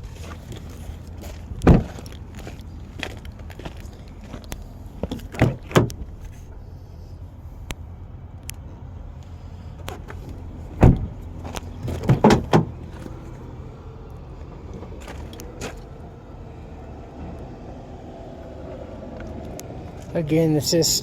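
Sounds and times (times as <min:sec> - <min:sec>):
low rumble: 0:00.0 - 0:20.3
loud knocks: 0:10.8 - 0:11.2, 0:11.9 - 0:12.8.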